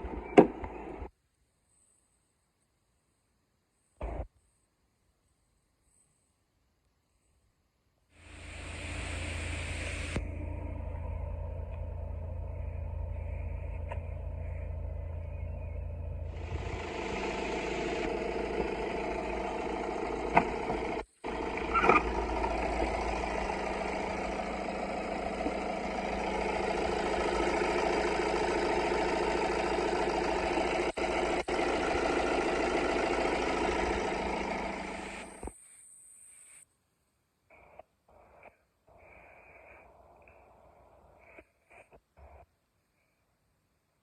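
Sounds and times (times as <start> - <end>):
diesel engine idling: 0.0 - 1.1, 8.2 - 35.5.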